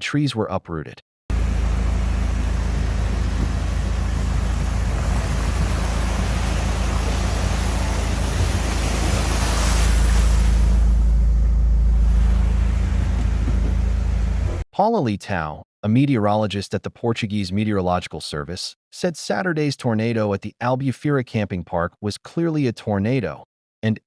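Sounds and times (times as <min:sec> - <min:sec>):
strong wind on microphone: 0:02.8 - 0:11.0.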